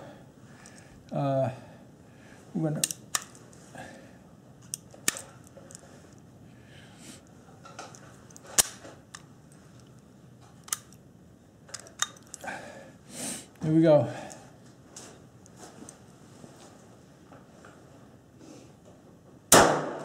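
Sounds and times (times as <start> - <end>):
pistol loading metallic clicks: 2.8 - 3.4, 4.6 - 5.8, 7.8 - 10.0, 10.6 - 11.1, 11.7 - 12.4.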